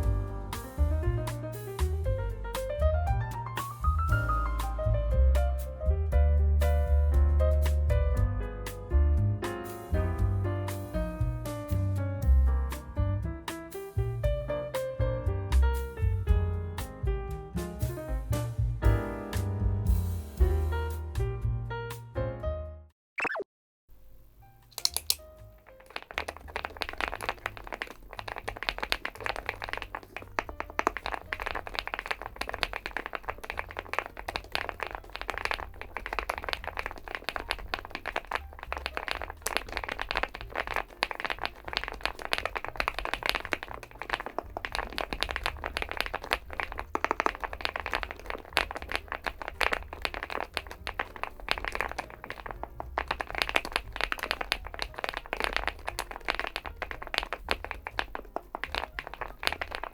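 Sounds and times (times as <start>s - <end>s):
mechanical keyboard typing: 24.7s - 59.9s.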